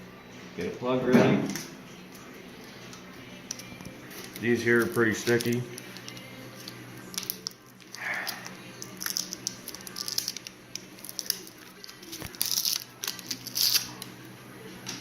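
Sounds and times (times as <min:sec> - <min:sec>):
rubber plugs crackling and tearing: 0:03.5 - 0:14.1.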